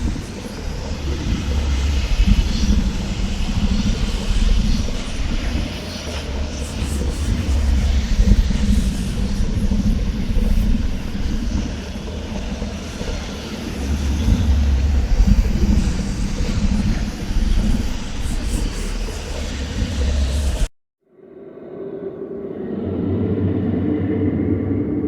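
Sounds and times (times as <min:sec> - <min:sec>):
deep noisy rumble: 0:00.0 - 0:20.7.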